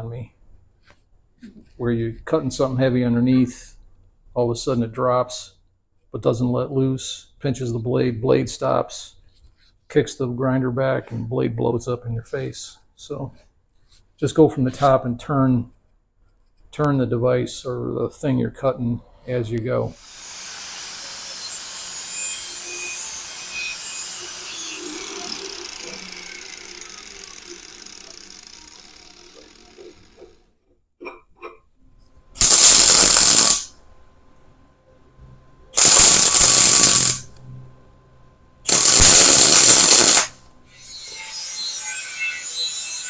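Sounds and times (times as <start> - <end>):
angle grinder cutting metal rod: 20.0 - 30.4, 32.4 - 33.7, 35.8 - 37.3, 38.7 - 43.0
hiss: 32.4 - 33.7, 35.8 - 37.2, 38.7 - 40.3.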